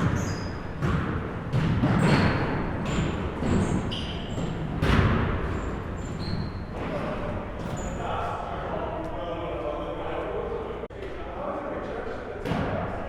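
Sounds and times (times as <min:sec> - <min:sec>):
shoe squeaks: 0:00.0 - 0:00.9, 0:02.0 - 0:04.6, 0:05.5 - 0:08.2
basketballs bouncing on gym floor: 0:00.0 - 0:07.9.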